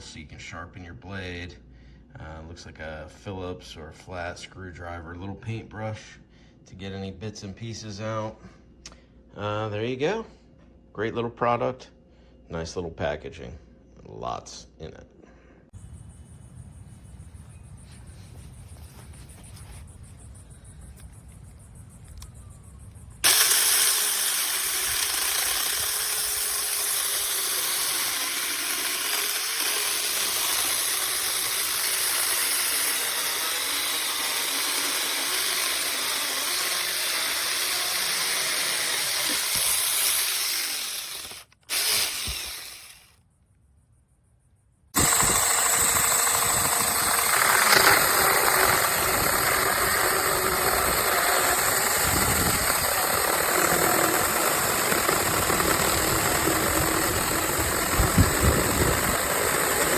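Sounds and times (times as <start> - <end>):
cordless chainsaw whirring: 23.2 - 43.2, 45.0 - 59.9.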